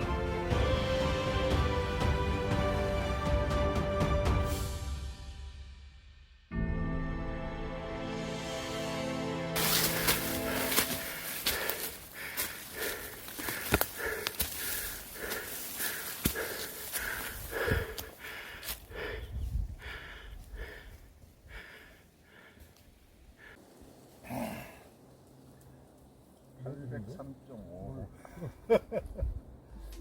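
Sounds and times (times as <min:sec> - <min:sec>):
sustained music chord: 0:06.5 - 0:11.4
person breathing heavily: 0:09.6 - 0:23.6, 0:24.2 - 0:24.9.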